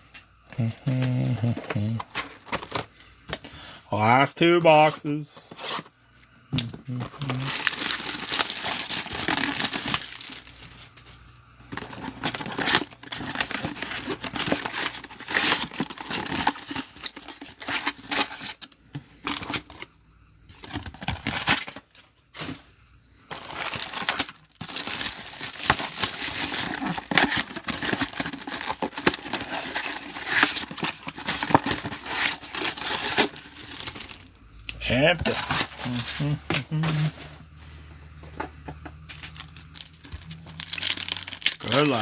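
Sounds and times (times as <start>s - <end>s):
plastic wrapping torn and crinkled: 6.6s - 11.1s, 11.7s - 19.8s, 23.3s - 34.6s, 35.2s - 37.0s, 39.0s - 42.0s.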